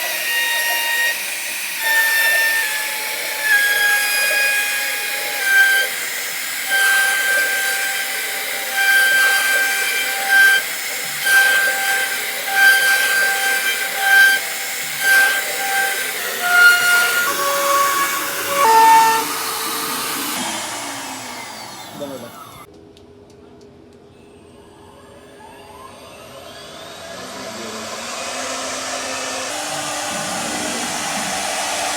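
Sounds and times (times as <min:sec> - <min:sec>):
hissing cutting noise: 0:00.0 - 0:22.7, 0:26.3 - 0:31.9
wood router whine: 0:00.0 - 0:22.7, 0:25.2 - 0:31.9.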